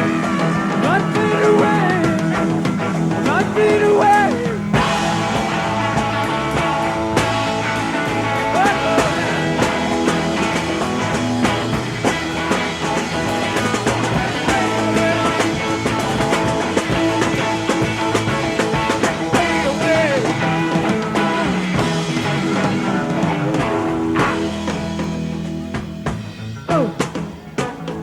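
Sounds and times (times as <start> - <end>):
rock guitar: 0.0 - 28.0
steady drum beat: 0.0 - 28.0.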